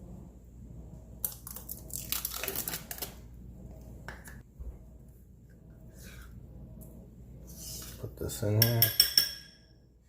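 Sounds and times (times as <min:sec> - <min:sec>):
plastic packaging crinkling: 0:01.6 - 0:03.2.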